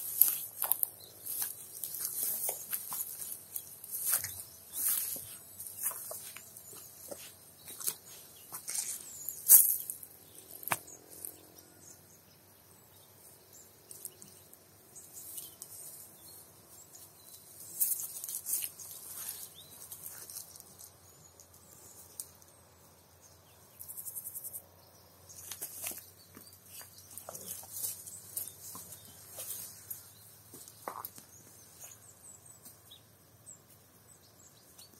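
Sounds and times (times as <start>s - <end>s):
birds chirping: 0.0s - 34.9s
insects chirping: 0.0s - 34.9s.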